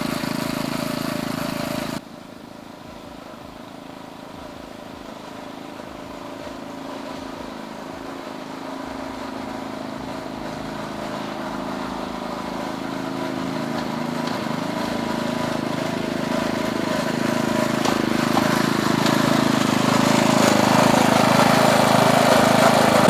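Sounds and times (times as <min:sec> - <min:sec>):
miniature locomotive motor drone: 0:00.0 - 0:23.0.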